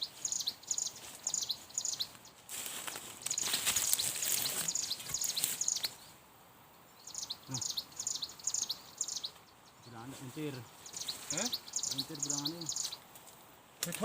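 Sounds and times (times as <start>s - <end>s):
rustling noise: 0.0s - 6.0s
small bird chirping: 0.0s - 13.4s.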